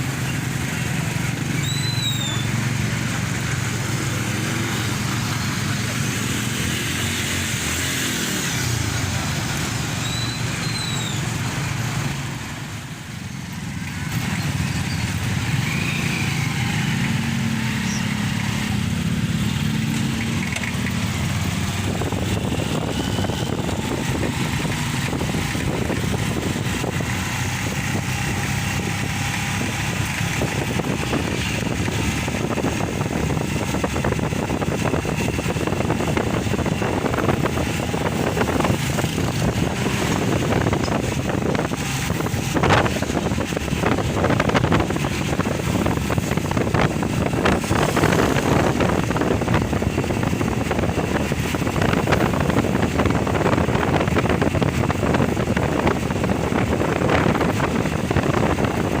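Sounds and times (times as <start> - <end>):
road and wind noise: 0.0 - 59.0
vehicle engine running: 0.0 - 59.0.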